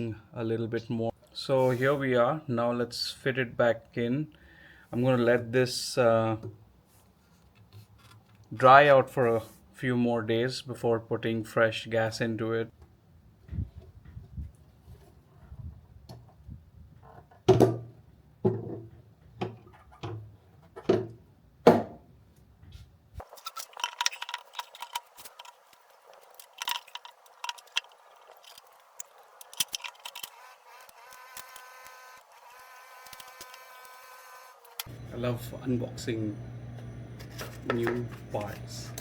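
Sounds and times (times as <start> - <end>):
light clicks and rattles: 23.2 - 31.7.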